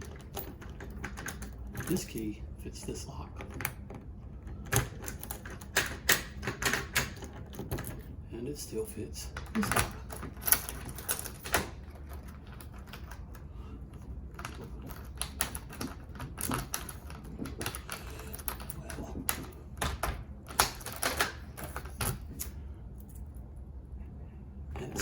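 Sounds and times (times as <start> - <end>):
key turning in door lock: 0.0 - 8.2, 9.3 - 23.3
metallic lock clicks: 3.4 - 8.0.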